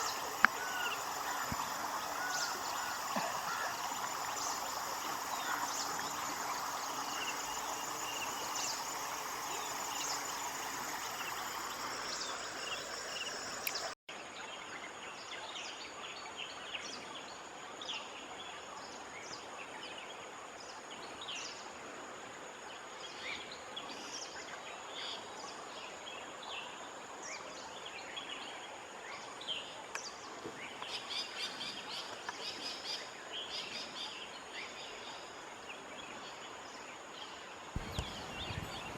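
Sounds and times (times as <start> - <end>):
high insect drone: 0.0 - 14.0, 37.8 - 38.9
steady hiss: 0.0 - 14.0, 37.4 - 38.9
small birds chirping: 37.8 - 38.9.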